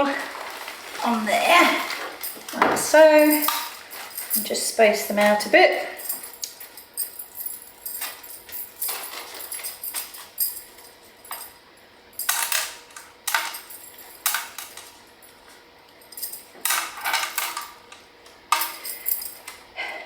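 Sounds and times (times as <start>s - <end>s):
metal bracelets jangling: 1.4s - 11.6s, 13.3s - 17.8s, 18.5s - 19.6s.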